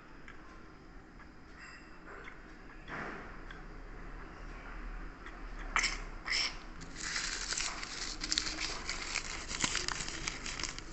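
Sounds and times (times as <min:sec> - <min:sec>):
slime crackling and popping: 0:06.8 - 0:10.9.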